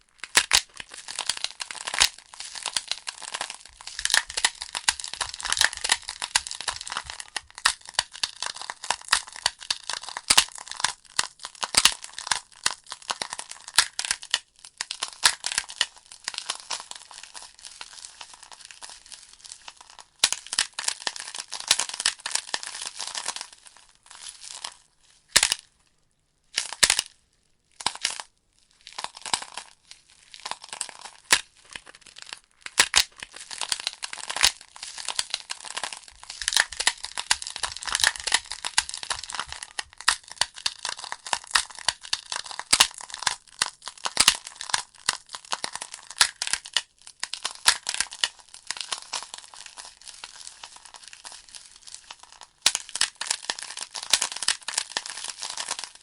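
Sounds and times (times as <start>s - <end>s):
wood fire crackling and popping: 0.2s - 10.6s, 32.6s - 46.6s.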